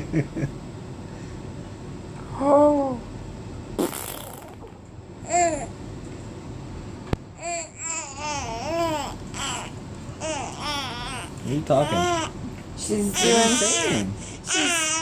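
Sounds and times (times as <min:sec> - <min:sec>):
baby babbling: 0:07.4 - 0:12.4, 0:13.1 - 0:15.0.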